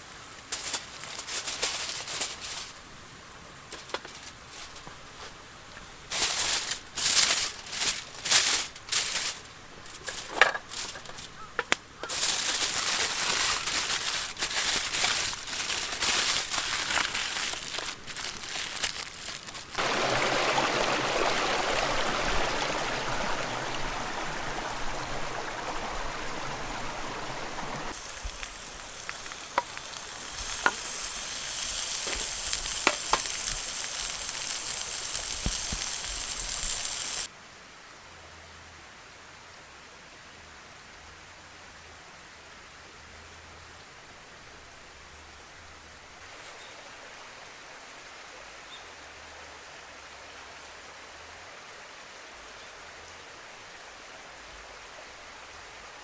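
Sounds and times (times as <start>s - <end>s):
meat sizzling in a pan: 27.9s - 37.3s.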